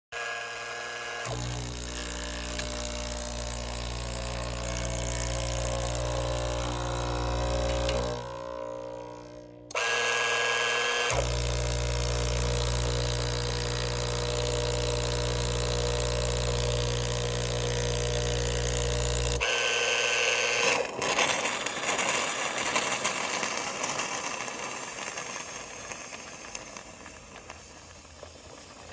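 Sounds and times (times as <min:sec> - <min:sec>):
espresso machine mechanical buzz: 0:00.2 - 0:28.9
hiss of water and steam: 0:22.3 - 0:28.9.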